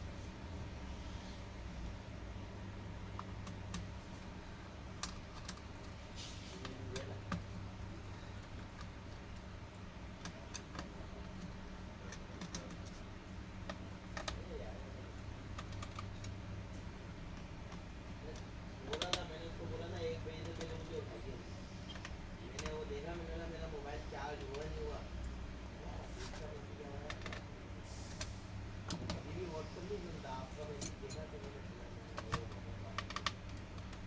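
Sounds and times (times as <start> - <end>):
low steady hum: 0.0 - 34.0
plastic parts clicking and tapping: 17.2 - 21.0.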